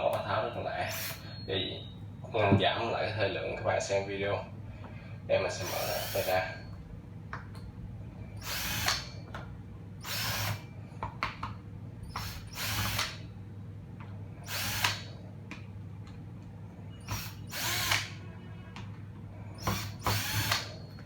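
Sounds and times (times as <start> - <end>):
cordless drill short bursts: 0.8 - 1.5, 5.6 - 6.7, 8.4 - 9.2, 10.0 - 10.7, 12.1 - 13.2, 14.4 - 15.1, 17.0 - 18.2, 19.6 - 20.9.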